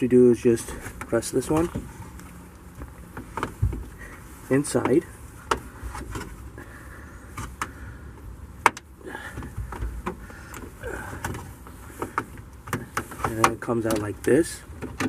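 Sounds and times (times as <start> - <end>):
handling noise: 0.6 - 6.6, 8.6 - 15.0
sharp plastic clicks and knocks: 12.0 - 15.0.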